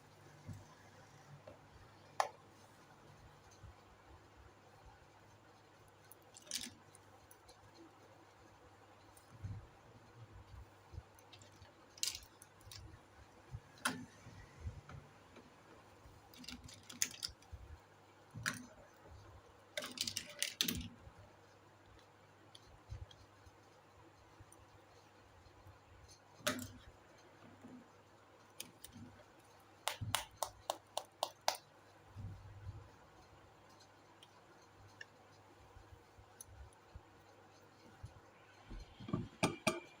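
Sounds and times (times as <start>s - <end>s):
plastic toy pieces clicking: 6.1s - 6.9s, 11.4s - 12.9s, 16.3s - 17.5s, 19.8s - 20.9s.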